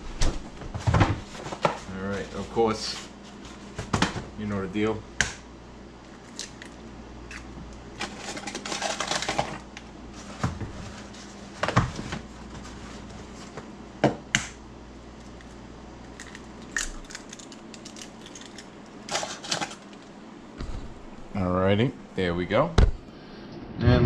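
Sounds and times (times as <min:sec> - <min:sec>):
eggs cracking taps and knocks: 0:15.2 - 0:18.9.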